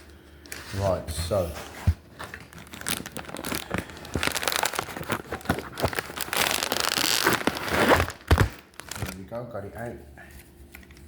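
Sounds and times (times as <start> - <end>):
packaging rustling and crinkling: 0.5 - 9.3.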